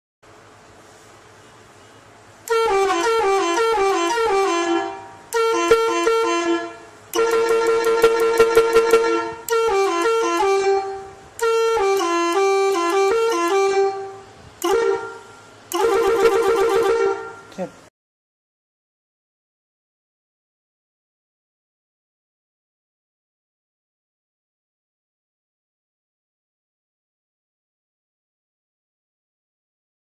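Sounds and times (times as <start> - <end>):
electric horn playing melodies: 2.4 - 17.6.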